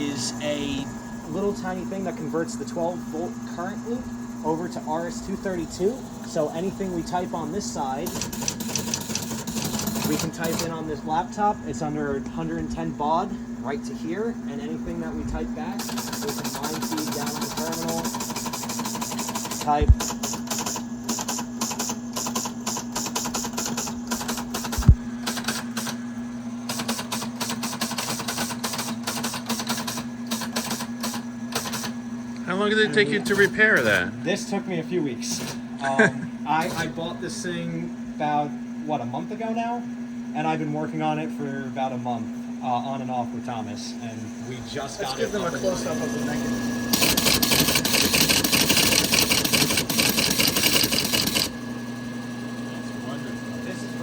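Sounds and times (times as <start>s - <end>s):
motor humming: 0.0s - 40.8s, 41.5s - 54.0s
teleprinter clattering: 7.8s - 10.8s, 15.8s - 26.0s, 26.7s - 32.0s, 46.9s - 51.5s.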